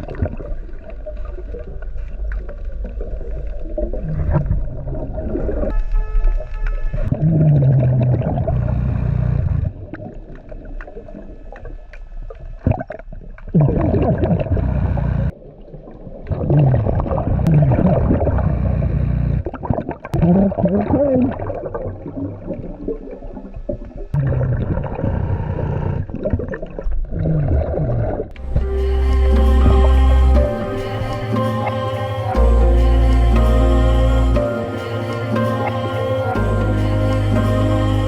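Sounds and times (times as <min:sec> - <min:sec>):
underwater gurgling and bubbling: 0:00.0 - 0:37.8
low sliding tones: 0:28.3 - 0:38.0.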